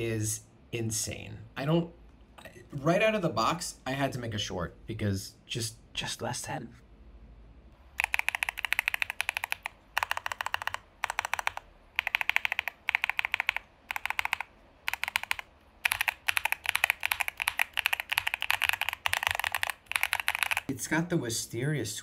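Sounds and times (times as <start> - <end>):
mechanical keyboard typing: 8.0 - 20.7.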